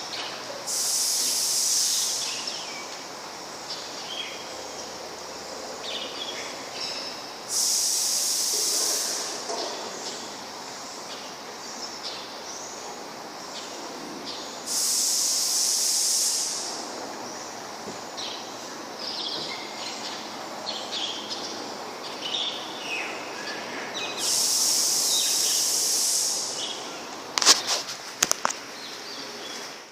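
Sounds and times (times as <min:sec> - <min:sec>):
loud high hissing bursts: 0:00.0 - 0:11.9, 0:14.4 - 0:19.2, 0:22.6 - 0:27.6
steady background hiss: 0:00.0 - 0:29.9.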